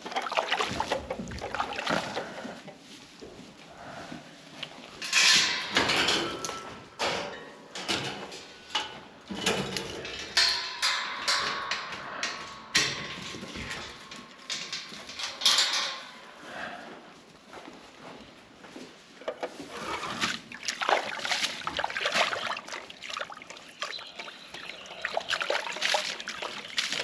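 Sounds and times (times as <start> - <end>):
hard objects knocking and clattering: 5.0 - 16.2.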